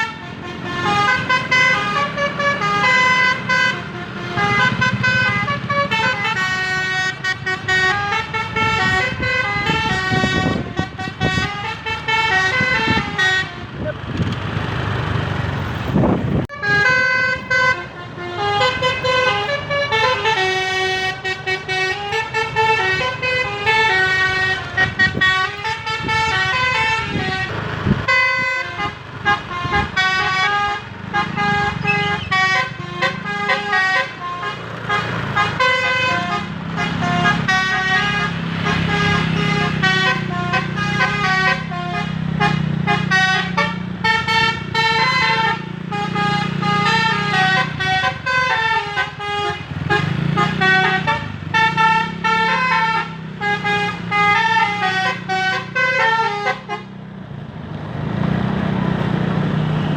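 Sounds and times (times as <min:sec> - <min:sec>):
bus horn playing melody: 0:00.0 - 0:13.9, 0:16.4 - 0:57.0.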